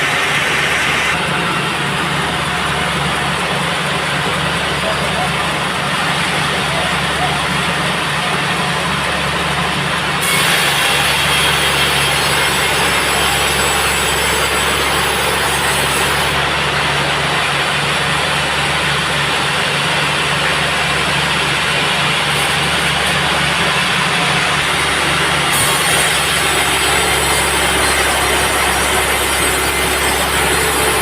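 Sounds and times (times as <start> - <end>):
band saw sawing a log: 0.0 - 2.0, 10.2 - 31.0.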